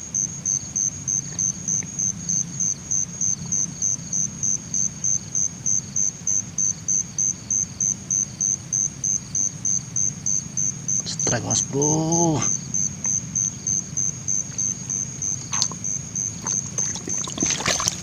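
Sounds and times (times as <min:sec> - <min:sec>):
cricket chirping: 0:00.0 - 0:18.0.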